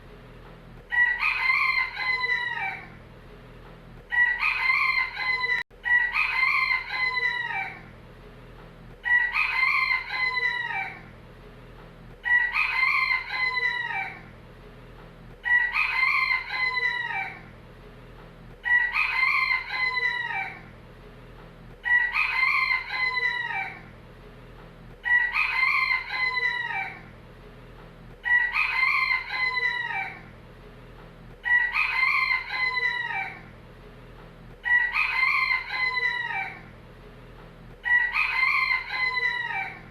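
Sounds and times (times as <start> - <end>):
rooster crowing: 0.9 - 3.0, 4.1 - 7.9, 9.0 - 11.1, 12.2 - 14.3, 15.4 - 17.5, 18.6 - 20.7, 21.8 - 23.9, 25.0 - 27.1, 28.2 - 30.3, 31.4 - 33.5, 34.6 - 36.7, 37.8 - 39.9.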